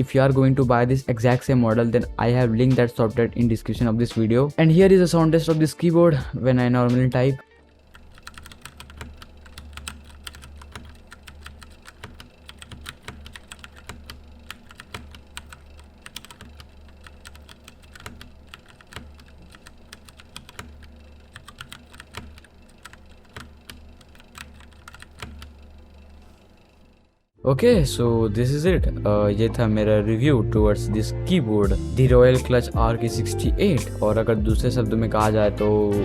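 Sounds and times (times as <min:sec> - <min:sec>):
mechanical keyboard typing: 0:07.8 - 0:26.3.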